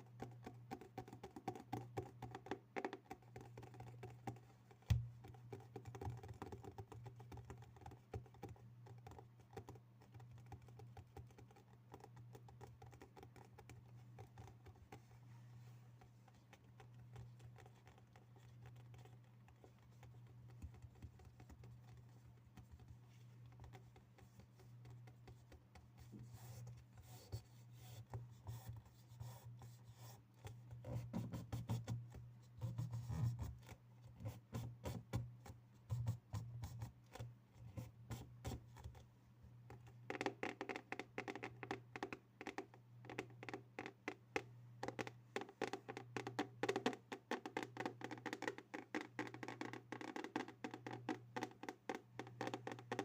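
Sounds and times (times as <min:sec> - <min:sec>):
fingers tapping and scratching: 0:00.0 - 0:15.1, 0:16.0 - 0:53.0
low steady hum: 0:00.0 - 0:40.1.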